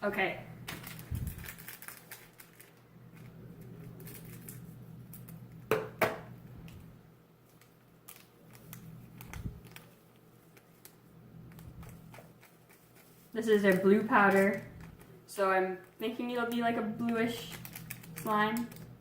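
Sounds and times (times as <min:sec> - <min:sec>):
plastic crinkling: 0:00.6 - 0:05.7, 0:06.5 - 0:19.0
scissors snipping plastic packet: 0:00.7 - 0:03.3, 0:10.5 - 0:15.1, 0:16.5 - 0:19.0.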